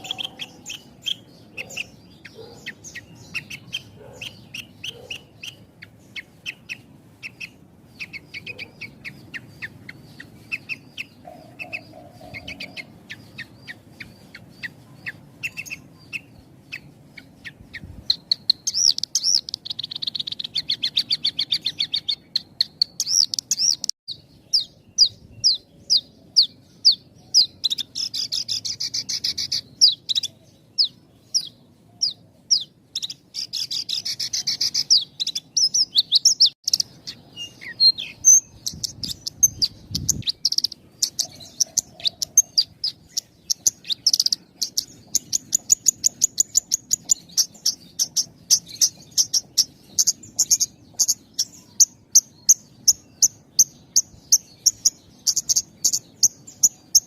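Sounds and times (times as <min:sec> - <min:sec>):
lark singing: 0:00.0 - 0:57.0.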